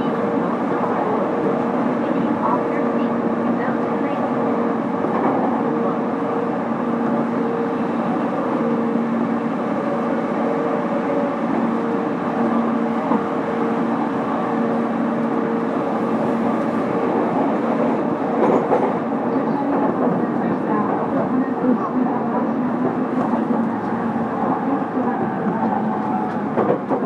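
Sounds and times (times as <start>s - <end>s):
train wheels rumbling on rail: 0.0s - 27.0s
two-tone train hum: 0.0s - 27.0s.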